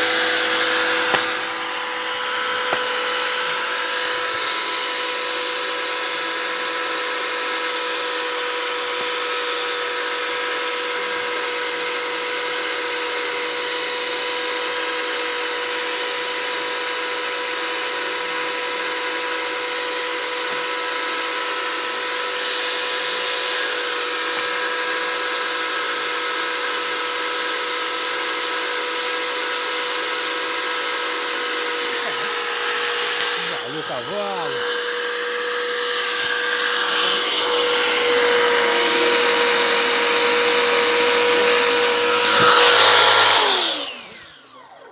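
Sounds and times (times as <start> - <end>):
electric motor whining: 0.0 - 16.0, 17.8 - 44.9
sprayer hiss: 31.5 - 43.6.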